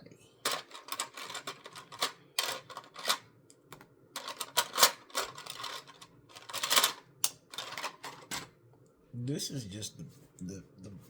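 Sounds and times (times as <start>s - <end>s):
plastic toy bricks clicking: 0.5s - 3.2s, 4.2s - 8.5s.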